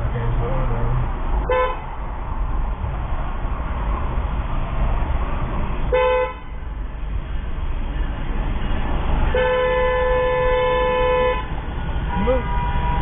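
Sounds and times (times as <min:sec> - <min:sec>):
low road rumble: 0:00.0 - 0:13.0
car horn blast: 0:01.5 - 0:01.8, 0:05.9 - 0:06.6, 0:09.3 - 0:13.0
short horn toot: 0:12.1 - 0:13.0.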